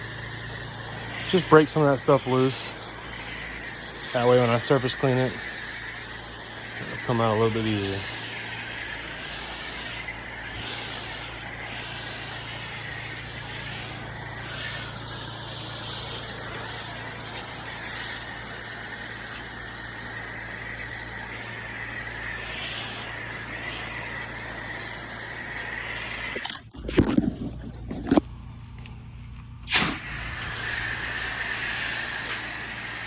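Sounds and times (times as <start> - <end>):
machine hum: 0.0 - 24.7
hiss of spray from nozzle: 0.0 - 26.5, 29.7 - 33.0.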